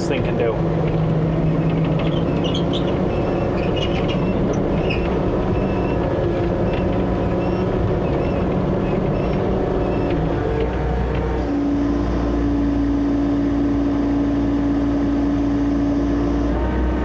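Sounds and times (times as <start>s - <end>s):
excavator diesel engine running: 0.0s - 17.0s
metallic squeaks and clinks: 1.9s - 6.0s.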